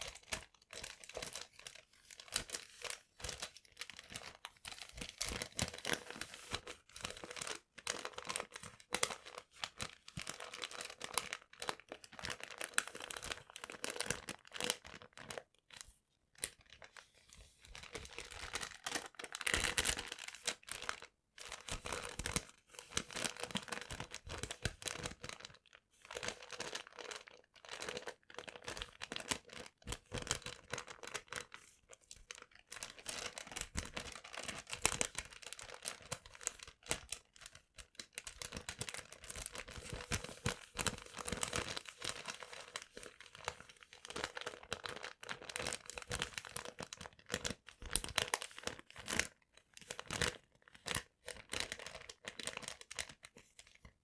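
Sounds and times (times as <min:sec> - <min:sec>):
paper crumpling and rustling: 0:00.0 - 0:15.4, 0:16.4 - 0:54.0.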